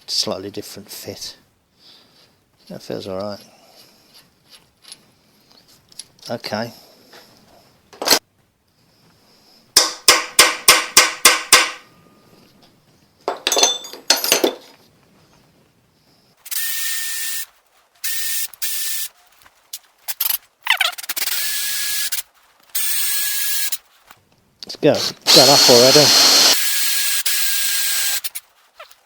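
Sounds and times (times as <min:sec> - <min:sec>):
electric drill whirring: 0:16.5 - 0:19.1, 0:21.0 - 0:22.2, 0:22.8 - 0:23.8, 0:25.2 - 0:28.4.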